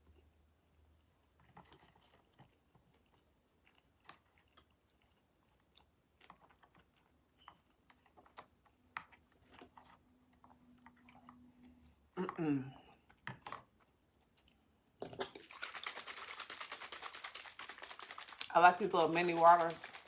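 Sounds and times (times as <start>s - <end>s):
chewing mouth clicks: 1.2s - 8.5s.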